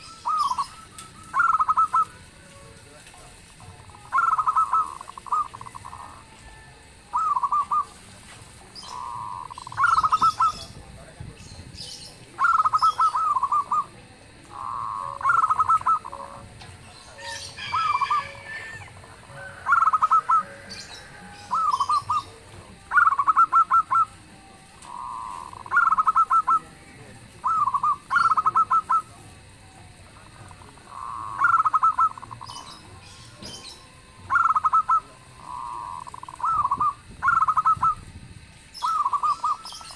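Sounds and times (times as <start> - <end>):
doves cooing: 0.0 - 39.9.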